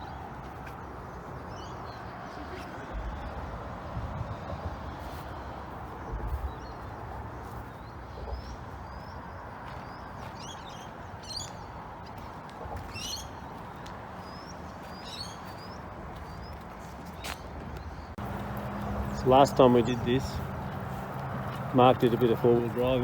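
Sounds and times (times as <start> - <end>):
birds chirping: 0.0 - 23.0
warbled bird calls: 5.4 - 21.6.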